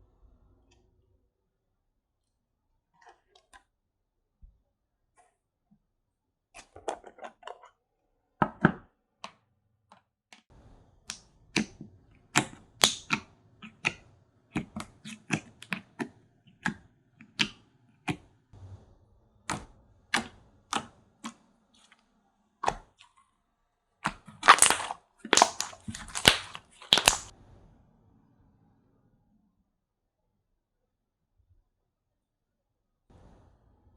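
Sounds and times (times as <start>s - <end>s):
slime clicking and squishing: 11.1s - 18.3s, 19.4s - 21.4s, 24.0s - 27.3s.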